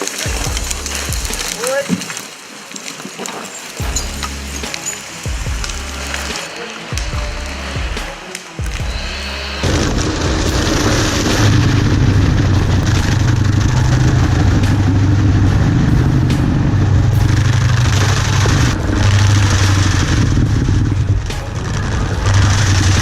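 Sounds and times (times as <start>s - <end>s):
engine running loud: 8.7s - 23.0s.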